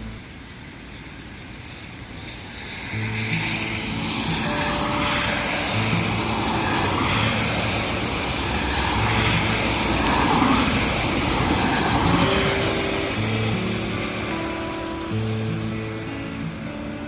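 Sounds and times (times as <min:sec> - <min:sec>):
gusty wind buffeting microphone: 0:02.9 - 0:15.2.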